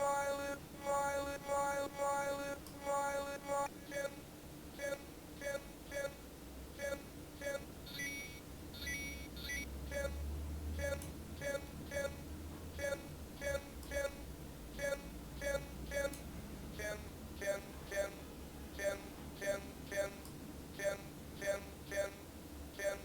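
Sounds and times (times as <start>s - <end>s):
low electronic hum: 0.0s - 23.0s
synthesizer bleeps: 7.9s - 10.1s.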